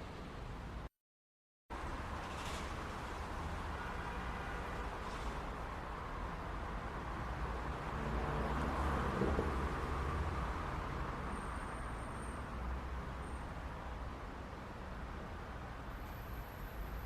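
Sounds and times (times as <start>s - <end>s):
road traffic rumble: 1.7s - 17.0s.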